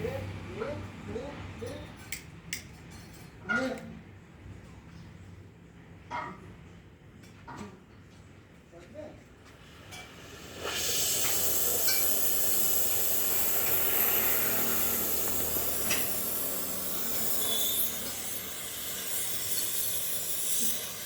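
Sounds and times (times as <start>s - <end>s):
welding torch flame hissing: 9.5s - 21.0s.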